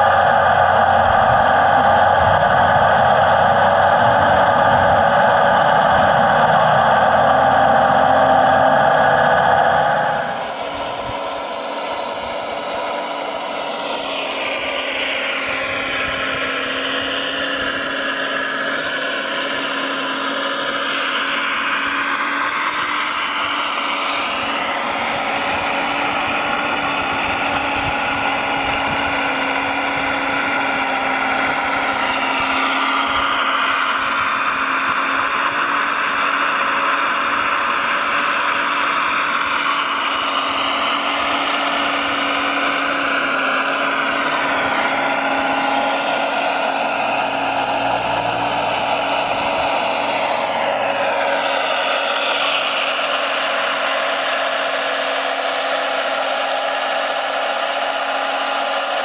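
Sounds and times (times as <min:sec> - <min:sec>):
steady low hum: 0:00.0 - 0:20.1
model truck electric motors whining: 0:00.0 - 0:59.0.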